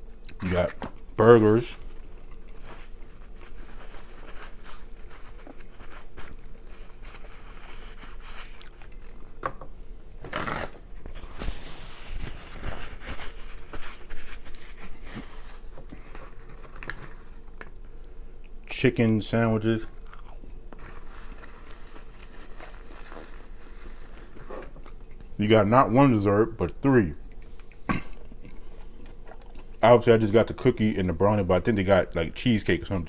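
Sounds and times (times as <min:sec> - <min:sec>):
chewing and mouth sounds: 0:01.8 - 0:03.2, 0:19.8 - 0:21.0, 0:27.3 - 0:29.8.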